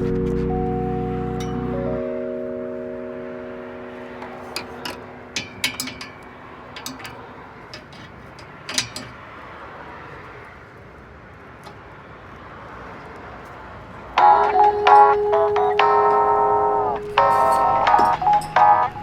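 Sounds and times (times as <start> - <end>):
music: 0.0 - 6.2, 14.2 - 19.0
clicks and knocks: 4.2 - 9.3, 17.0 - 19.0.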